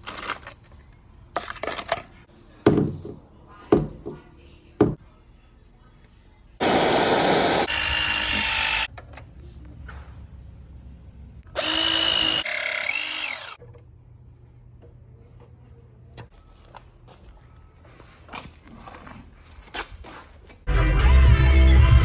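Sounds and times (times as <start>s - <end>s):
power drill running: 6.6s - 8.9s, 11.5s - 13.6s.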